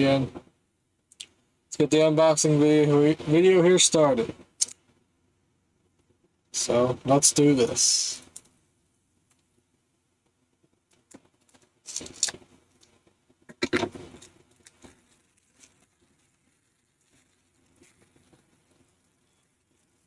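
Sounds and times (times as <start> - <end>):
light clicks and rustles: 10.2 - 20.0
plastic wrap crinkling tears: 11.0 - 12.4.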